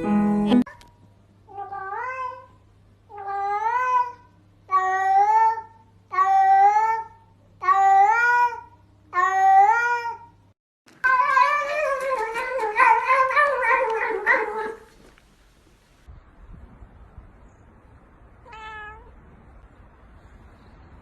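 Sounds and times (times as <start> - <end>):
kitten meowing: 18.5 - 19.2.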